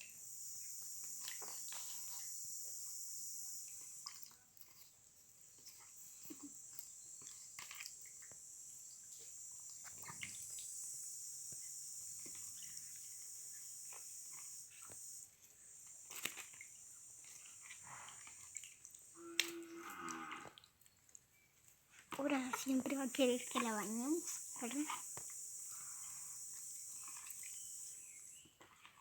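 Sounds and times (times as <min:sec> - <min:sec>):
water spray hissing: 0:00.0 - 0:04.4, 0:05.9 - 0:19.4, 0:22.2 - 0:28.4
small splashes: 0:00.6 - 0:02.8, 0:03.6 - 0:05.0, 0:05.6 - 0:15.2, 0:15.9 - 0:21.2, 0:22.0 - 0:29.0.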